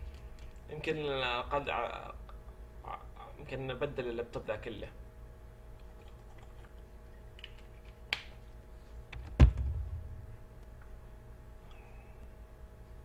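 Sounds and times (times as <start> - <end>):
low electrical hum: 0.0 - 13.0
loud knock: 9.2 - 10.4.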